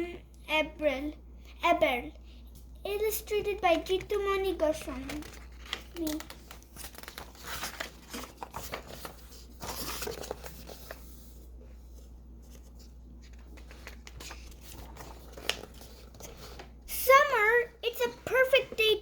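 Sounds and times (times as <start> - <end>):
paper pages rustling and turning: 3.3 - 16.8.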